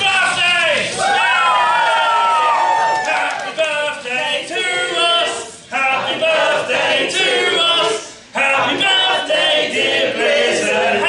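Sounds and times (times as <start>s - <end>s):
group singing in unison: 3.9s - 11.0s.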